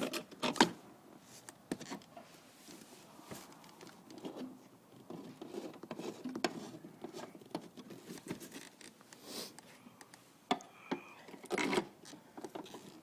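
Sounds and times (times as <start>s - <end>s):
small clicks and scratches: 1.4s - 10.2s.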